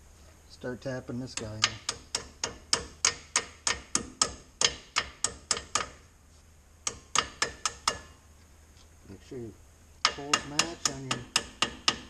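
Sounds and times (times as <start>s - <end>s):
hammer tapping metal pin: 1.4s - 6.0s, 6.8s - 8.2s, 10.0s - 12.0s.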